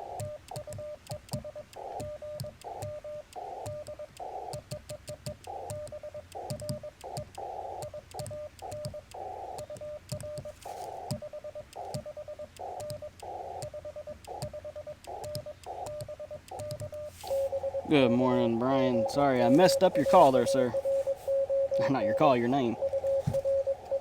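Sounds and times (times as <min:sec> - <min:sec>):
morse code tone: 0:05.5 - 0:24.0
radio band hiss: 0:17.0 - 0:24.0.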